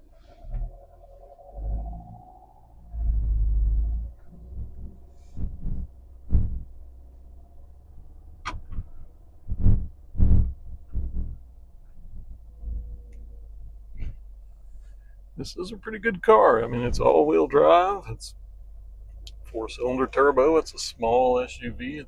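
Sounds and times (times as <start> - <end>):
car cabin hum while driving: 0.0 - 22.0
car rumble: 0.0 - 22.0
irregular thumps: 2.9 - 7.4, 8.4 - 13.1.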